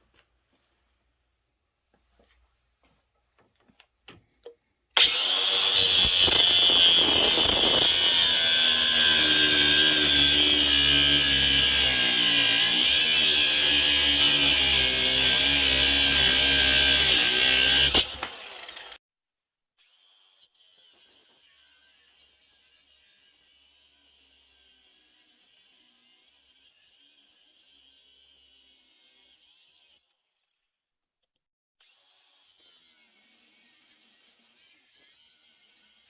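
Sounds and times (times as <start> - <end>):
angle grinder cutting metal: 5.0 - 19.0, 31.9 - 36.0.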